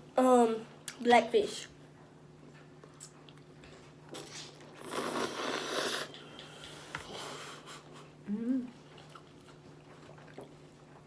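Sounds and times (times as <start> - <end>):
person eating spaghetti: 4.1 - 7.3.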